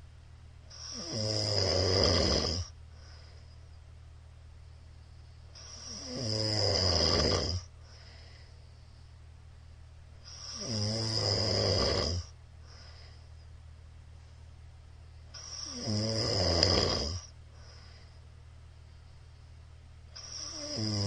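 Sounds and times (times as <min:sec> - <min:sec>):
quiet breathing: 0:00.0 - 0:21.0
man snoring loudly: 0:00.7 - 0:02.7, 0:05.6 - 0:07.7, 0:10.3 - 0:12.3, 0:15.4 - 0:17.3, 0:20.2 - 0:21.0.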